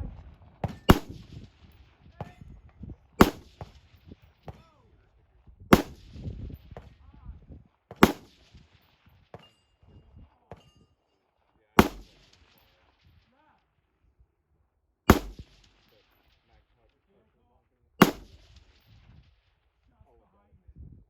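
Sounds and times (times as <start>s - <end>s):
rifle shots with echo: 0.1s - 2.5s, 3.1s - 4.8s, 5.7s - 7.0s, 7.9s - 9.6s, 11.8s - 13.3s, 15.1s - 17.0s, 18.0s - 19.6s.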